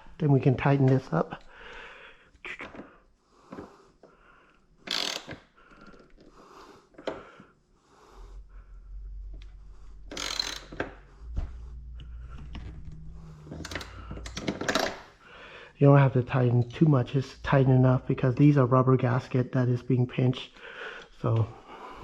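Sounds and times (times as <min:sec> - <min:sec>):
ratchet wrench clicking: 0:04.8 - 0:05.9, 0:10.1 - 0:10.9.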